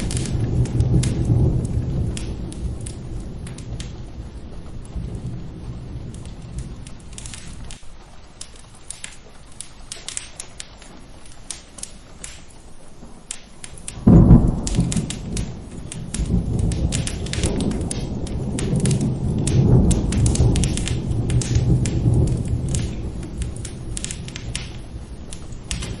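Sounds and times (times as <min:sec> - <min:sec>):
loud thunderclap: 0:00.0 - 0:07.8, 0:13.9 - 0:26.0
low thunder rumble: 0:00.0 - 0:08.4, 0:13.0 - 0:26.0
fireplace crackling: 0:00.0 - 0:26.0
steady rain: 0:00.0 - 0:26.0.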